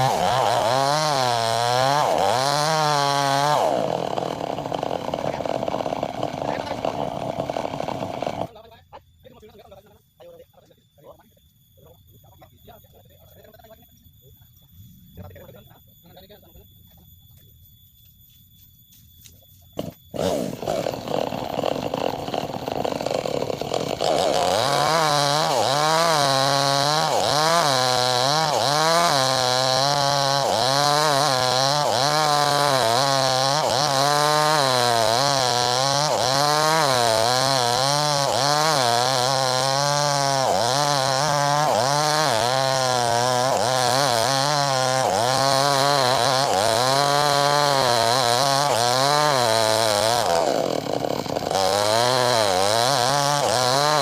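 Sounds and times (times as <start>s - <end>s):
chainsaw cutting wood: 0.0s - 8.5s, 19.8s - 54.0s.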